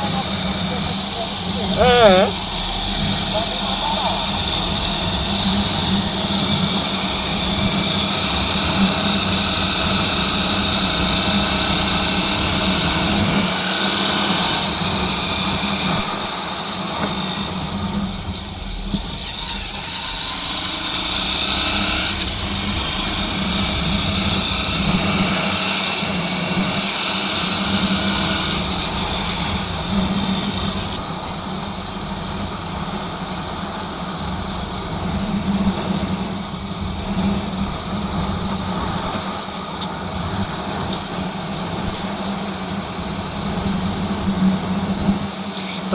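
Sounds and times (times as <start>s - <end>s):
motorcycle engine running: 0.0s - 45.9s
wind and road noise: 0.0s - 45.9s.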